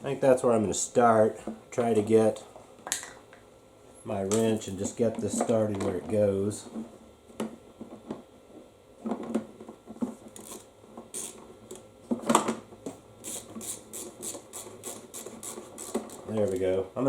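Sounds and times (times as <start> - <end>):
ratchet clicks: 11.2 - 11.4, 13.2 - 16.6.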